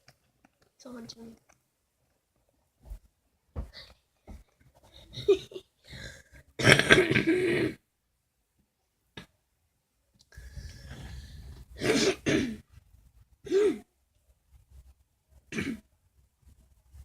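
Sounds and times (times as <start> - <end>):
person coughing: 6.6 - 7.8, 11.8 - 12.6, 13.5 - 13.9, 15.5 - 15.8.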